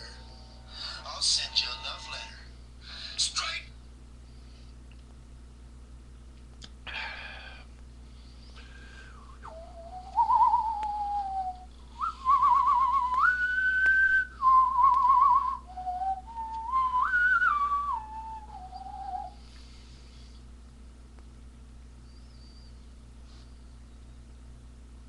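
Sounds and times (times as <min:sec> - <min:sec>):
person whistling a tune: 0:09.1 - 0:19.4.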